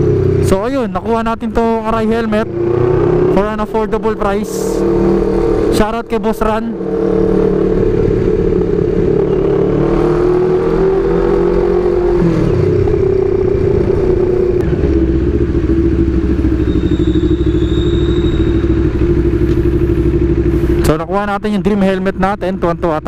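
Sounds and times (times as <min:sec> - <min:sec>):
motorcycle engine running: 0:00.0 - 0:23.0.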